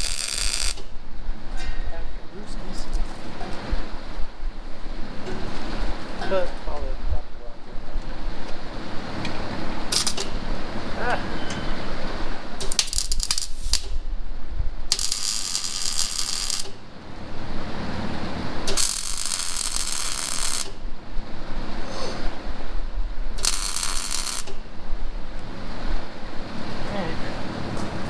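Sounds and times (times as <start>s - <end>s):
welding arc crackling: 0.0s - 0.9s, 9.8s - 10.4s, 12.5s - 14.0s, 14.8s - 20.9s, 23.3s - 25.5s
low steady hum: 0.0s - 28.0s
sharp metallic clicks: 12.6s - 14.0s.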